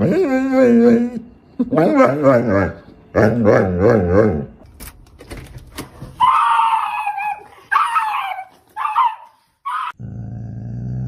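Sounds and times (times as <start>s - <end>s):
dog screaming cries: 6.2s - 10.0s.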